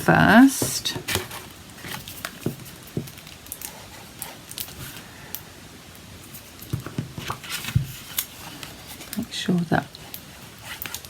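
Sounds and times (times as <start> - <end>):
paper rustling: 0.0 - 5.1, 6.3 - 9.2, 10.0 - 11.0.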